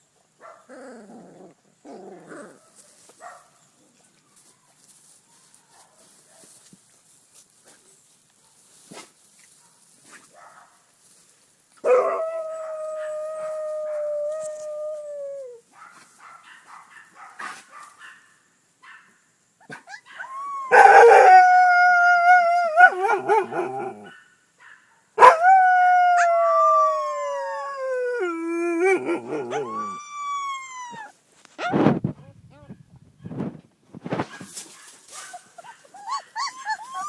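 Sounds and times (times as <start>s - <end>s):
pups howling: 11.8s - 15.6s, 19.9s - 24.1s, 25.2s - 31.1s, 35.6s - 37.0s
pups whimpering: 28.2s - 31.1s, 35.6s - 37.0s.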